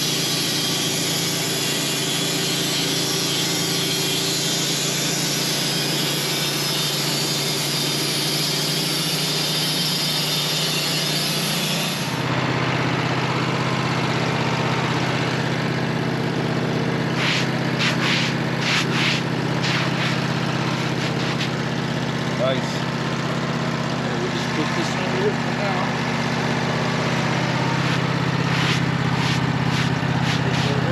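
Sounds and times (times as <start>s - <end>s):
engine running: 0.0s - 30.9s
sawmill cutting log: 0.0s - 30.9s.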